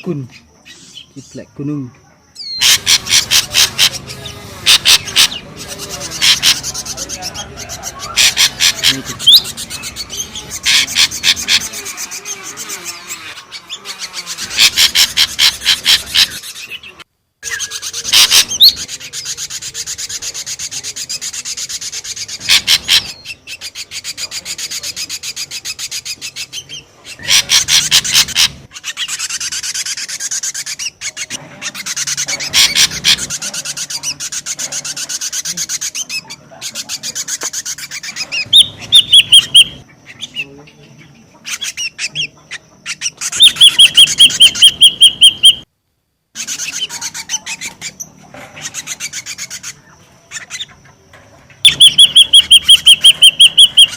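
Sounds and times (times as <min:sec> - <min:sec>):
bird harsh rasping chatter: 0:02.4 - 0:40.5, 0:41.3 - 0:45.7, 0:46.4 - 0:53.9
bird whistled notes: 0:38.4 - 0:39.8, 0:43.3 - 0:45.6, 0:51.6 - 0:53.9.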